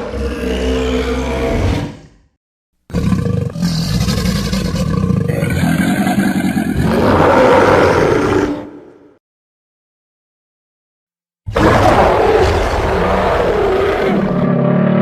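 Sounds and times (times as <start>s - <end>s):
monster growling roar: 0.0s - 2.2s, 2.9s - 8.9s, 11.5s - 15.0s.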